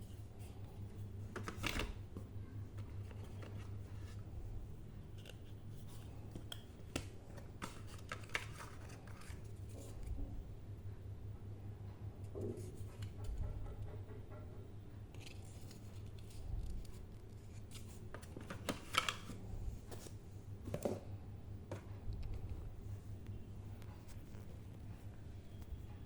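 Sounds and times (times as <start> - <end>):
handling phone packaging: 0.1 - 10.2, 15.1 - 23.3.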